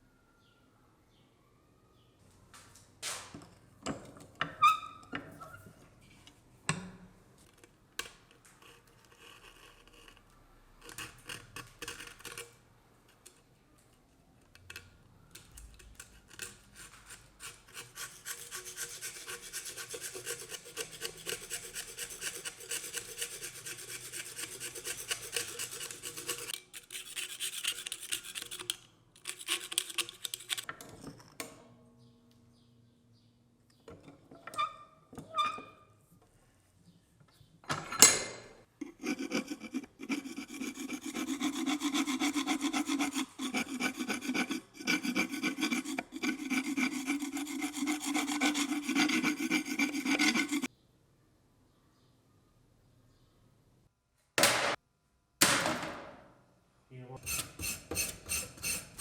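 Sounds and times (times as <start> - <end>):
scraping rusty steel blade: 10.8 - 12.6, 15.9 - 30.7, 38.8 - 50.7, 57.2 - 59.0.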